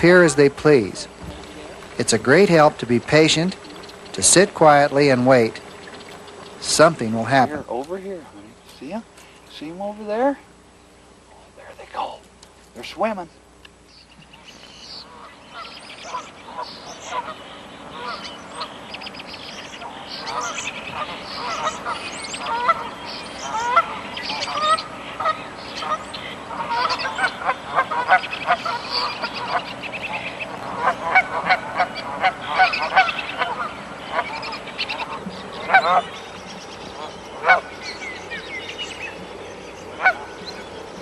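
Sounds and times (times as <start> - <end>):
geese honking: 0.0 - 10.7, 13.8 - 41.0.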